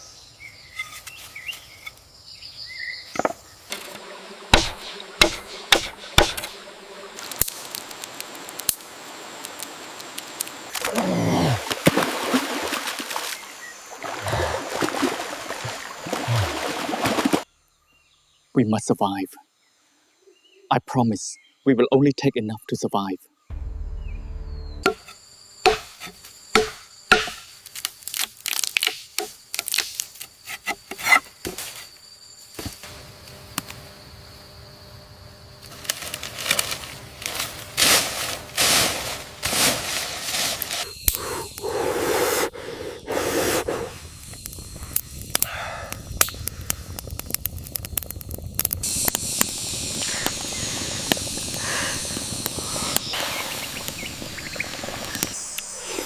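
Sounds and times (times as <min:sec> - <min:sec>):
sharp strikes: 0:04.5 - 0:06.6, 0:26.6 - 0:27.4.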